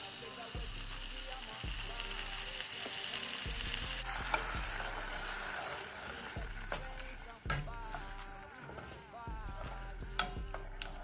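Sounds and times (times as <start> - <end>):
food sizzling in a pan: 0.0 - 11.0
utensil clicking against pan: 2.6 - 11.0.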